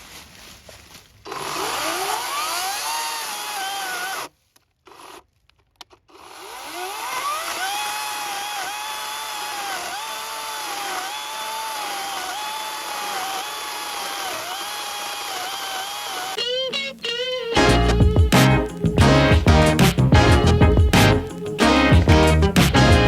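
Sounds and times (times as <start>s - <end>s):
chainsaw cutting wood: 1.2s - 5.3s, 6.0s - 16.4s.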